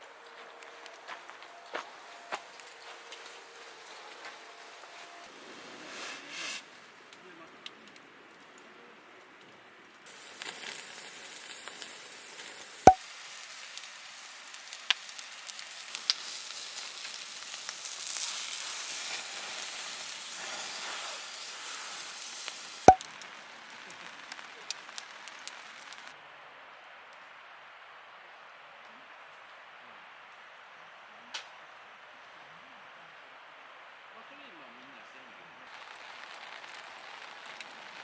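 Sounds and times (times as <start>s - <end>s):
small crackles: 0.0s - 26.2s, 35.6s - 38.0s
food sizzling in a pan: 10.1s - 26.2s, 35.7s - 38.0s.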